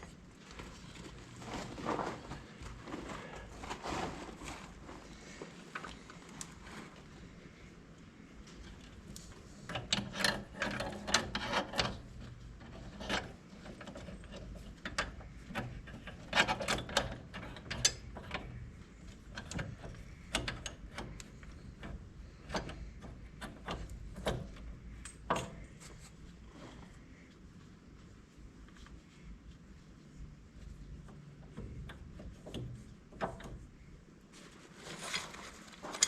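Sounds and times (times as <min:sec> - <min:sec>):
metal clicks and knocks: 0:08.6 - 0:25.8, 0:31.0 - 0:33.9.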